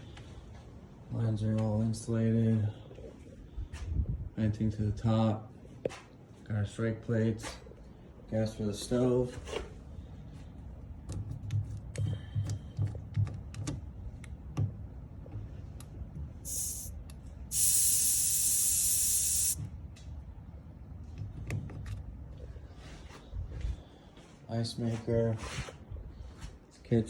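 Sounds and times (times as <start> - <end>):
handling knocks and ticks: 11.0 - 16.3
pressurised air hissing from valve: 16.4 - 19.6.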